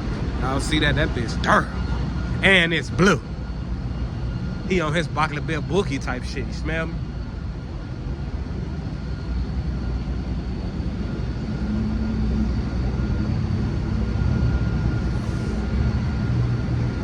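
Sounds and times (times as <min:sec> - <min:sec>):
vehicle low rumble: 0:00.0 - 0:09.0
faint high whine: 0:00.0 - 0:17.0.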